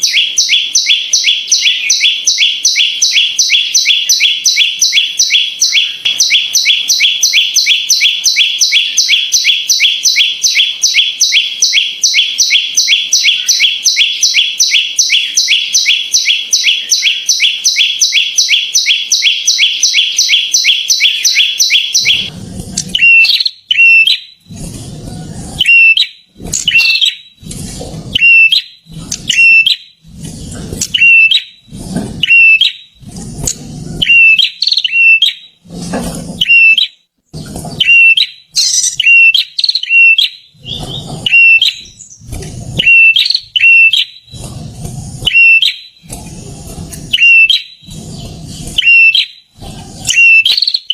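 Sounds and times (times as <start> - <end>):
bird chirping: 0.0 - 35.8, 36.4 - 50.9
low rough sound: 22.3 - 23.0, 24.4 - 25.6, 30.0 - 31.0, 44.3 - 45.3, 46.0 - 47.2.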